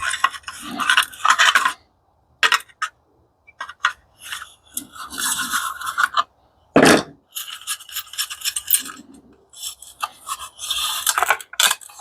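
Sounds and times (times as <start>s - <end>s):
metal scraping and rubbing: 0.0s - 1.8s, 3.5s - 12.0s
loud knock: 6.8s - 7.2s.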